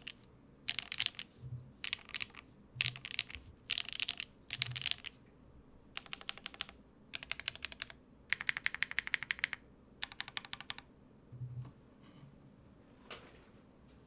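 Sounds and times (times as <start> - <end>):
fast typing on mechanical keyboard: 0.0 - 5.2, 6.0 - 10.9.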